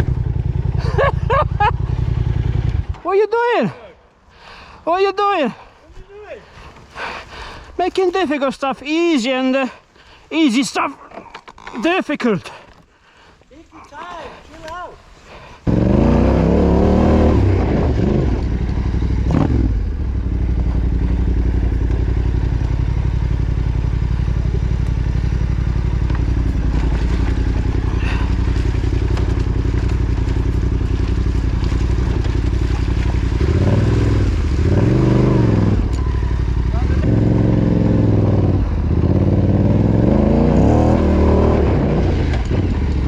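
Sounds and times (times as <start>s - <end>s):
motorcycle engine running: 0.0s - 3.0s, 15.6s - 43.0s
throttle revs: 15.6s - 21.4s, 22.1s - 42.6s.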